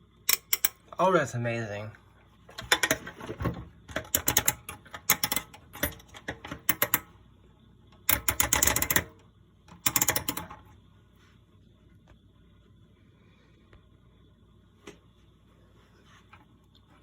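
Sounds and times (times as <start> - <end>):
mechanical clicks in bursts: 8.0 - 9.1, 9.7 - 10.5.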